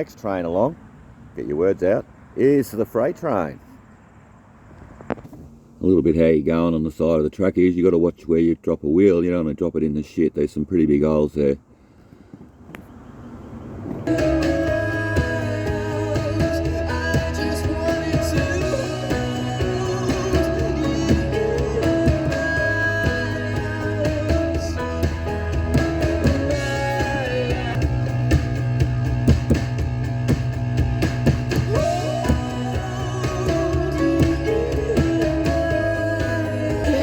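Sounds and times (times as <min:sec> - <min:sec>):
person singing: 0:14.1 - 0:28.1, 0:31.5 - 0:37.0
drums: 0:14.1 - 0:37.0
electric guitar: 0:14.1 - 0:37.0.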